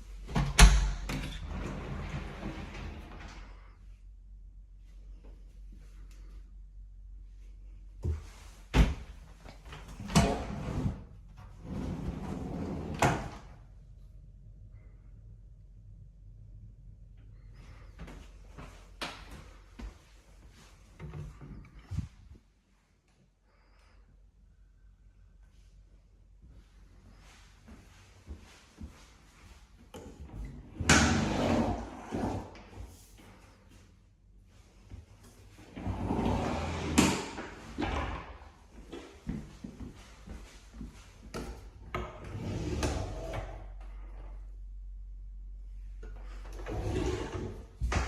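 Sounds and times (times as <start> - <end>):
sliding rumble: 1.1 - 3.8, 9.9 - 18.8, 30.5 - 32.7, 35.4 - 39.0, 42.0 - 44.5, 45.6 - 48.0.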